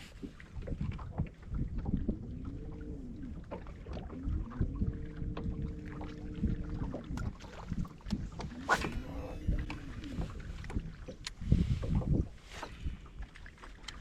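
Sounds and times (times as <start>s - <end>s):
low rumble: 1.5s - 11.8s
electric trolling motor whining: 2.0s - 10.4s.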